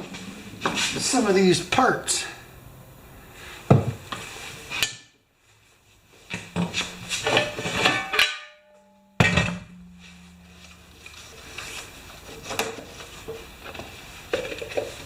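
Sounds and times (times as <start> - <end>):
metallic ringing: 6.5 - 13.6.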